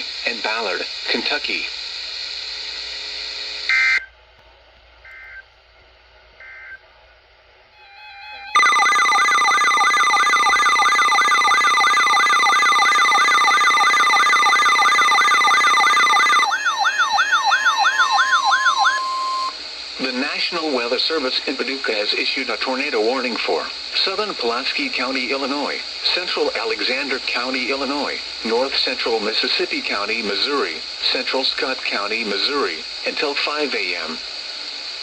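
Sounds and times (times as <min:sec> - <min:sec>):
electronic alarm siren sweep: 0:07.8 - 0:19.6
electronic data burst: 0:08.5 - 0:19.6.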